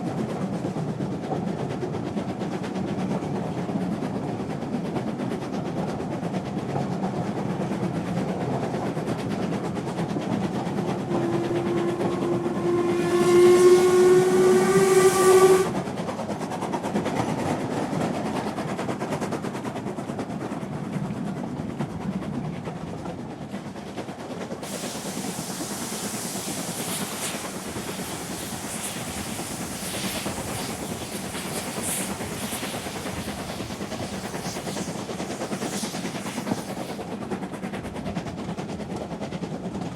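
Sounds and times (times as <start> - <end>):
train rumbling: 0.0 - 39.9
train whistle: 11.0 - 15.8
hiss with rapid clicks: 23.5 - 39.9.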